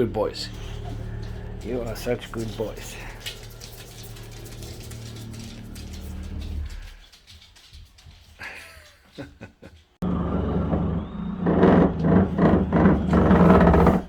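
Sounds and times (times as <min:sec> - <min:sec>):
heavy construction machine droning: 0:10.0 - 0:14.0.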